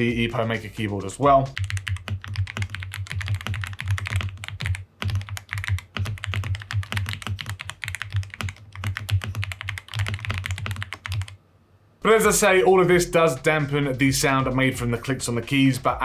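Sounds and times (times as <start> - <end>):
fast typing on mechanical keyboard: 0.0 - 11.4.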